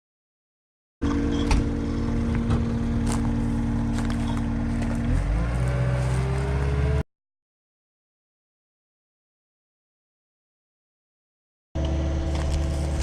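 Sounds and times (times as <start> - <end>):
diesel engine running: 1.0 - 7.0, 11.8 - 13.0.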